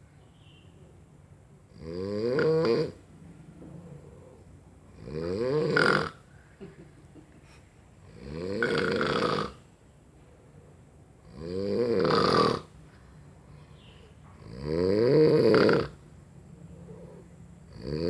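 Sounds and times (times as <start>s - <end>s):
loud snoring: 1.7s - 3.0s, 3.9s - 6.2s, 8.0s - 9.6s, 11.2s - 12.7s, 14.4s - 16.0s, 16.9s - 18.0s
quiet breaths: 2.9s - 5.1s, 6.1s - 11.4s, 12.6s - 14.5s, 15.8s - 18.0s.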